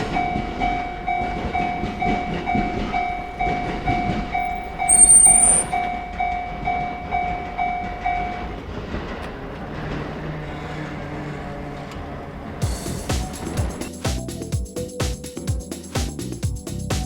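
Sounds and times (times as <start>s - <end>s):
train passing: 0.0s - 14.0s
level crossing bell dinging: 3.0s - 6.5s
high squeal: 4.4s - 6.2s.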